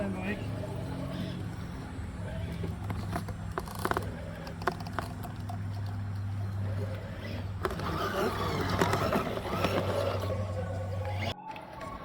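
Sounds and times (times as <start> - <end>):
low motor hum: 0.0 - 12.0.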